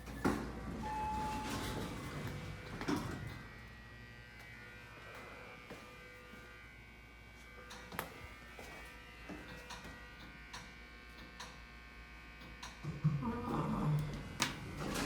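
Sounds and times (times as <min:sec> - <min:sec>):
elevator hum: 0:00.0 - 0:05.0, 0:12.8 - 0:15.0.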